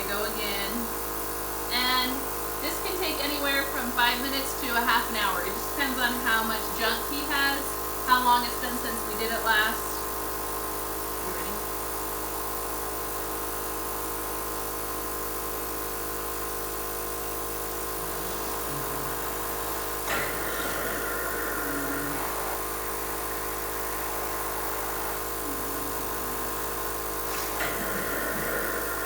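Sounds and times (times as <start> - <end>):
machine blower hum: 10.1 - 29.0
rush of air: 18.0 - 29.0.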